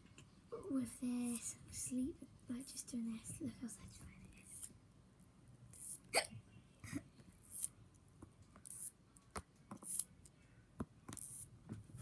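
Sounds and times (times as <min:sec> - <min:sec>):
fidget toy zipping rasps: 0:04.4 - 0:04.7, 0:05.7 - 0:06.1, 0:07.4 - 0:07.7, 0:08.6 - 0:09.0, 0:09.8 - 0:10.1, 0:11.2 - 0:11.5.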